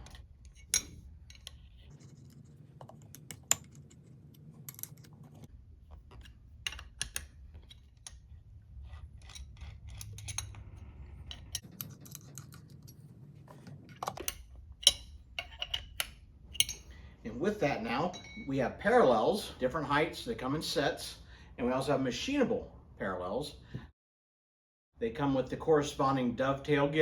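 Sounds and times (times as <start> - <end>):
low steady hum: 0.0 - 23.9
hand tool metallic clicks: 14.2 - 16.9.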